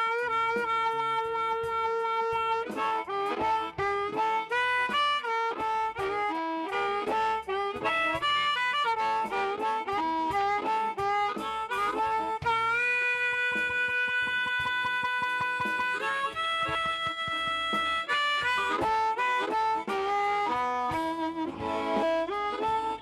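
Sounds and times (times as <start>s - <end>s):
blues harmonica: 0.0s - 23.0s.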